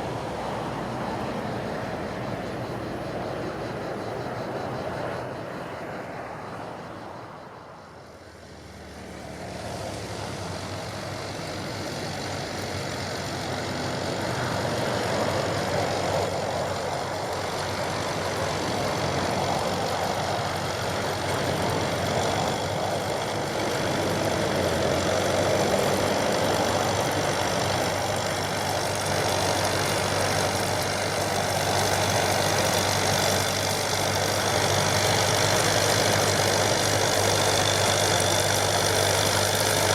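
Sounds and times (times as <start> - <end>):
tractor diesel engine running: 0.0 - 39.9
round baler working: 8.3 - 39.9.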